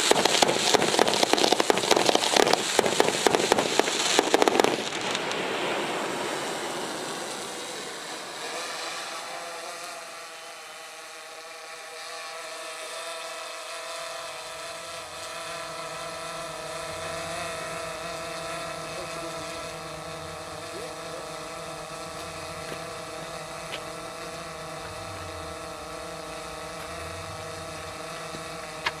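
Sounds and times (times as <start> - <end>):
fireworks crackle: 0.0 - 13.0, 14.3 - 29.0
engine pulsing hum: 13.9 - 29.0.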